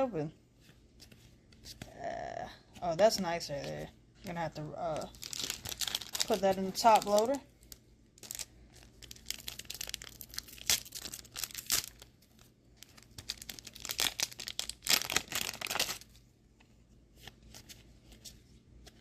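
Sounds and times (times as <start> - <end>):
plastic packaging crackling: 4.9 - 16.2.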